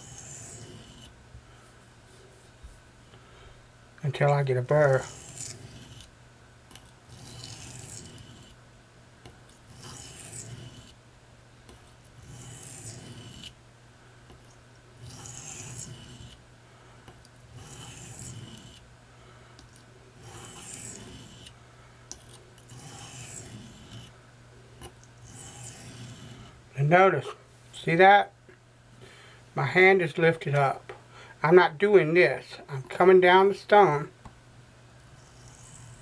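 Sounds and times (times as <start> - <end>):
knife blade scraping on oilstone: 0.0 - 1.1, 4.8 - 6.1, 6.8 - 8.6, 9.7 - 11.0, 12.2 - 13.6, 15.0 - 16.4, 17.5 - 18.8, 20.2 - 21.5, 22.2 - 24.1, 25.2 - 26.6
steady low hum: 0.0 - 36.0.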